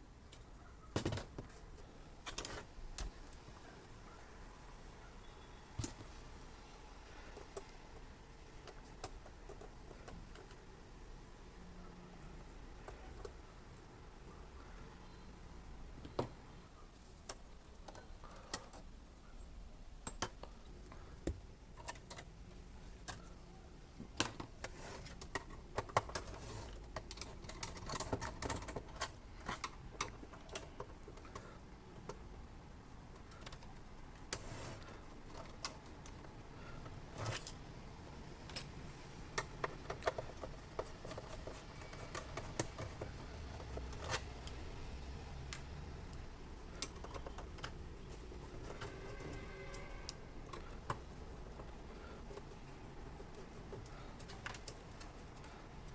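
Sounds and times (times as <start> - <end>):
small tools and parts clicking: 20.0 - 22.4, 24.1 - 32.2, 45.5 - 55.9.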